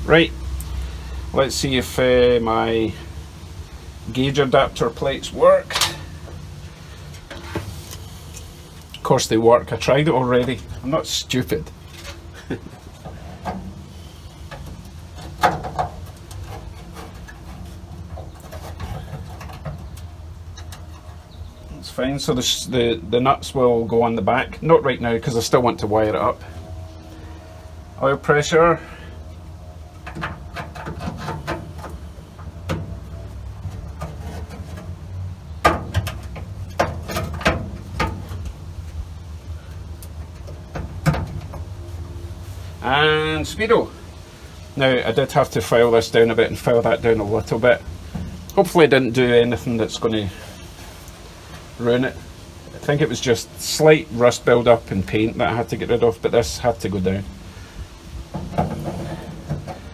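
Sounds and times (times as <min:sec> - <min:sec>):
steady low hum: 0:00.0 - 0:59.9.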